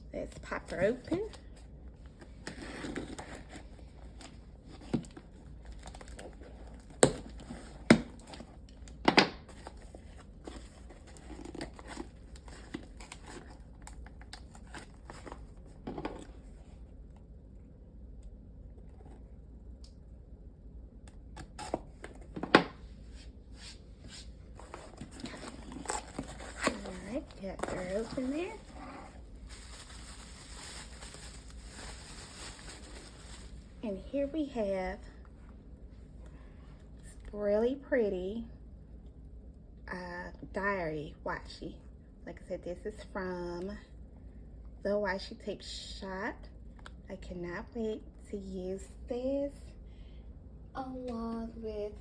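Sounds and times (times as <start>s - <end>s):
packaging crinkling: 5.0s - 15.7s, 24.6s - 33.8s.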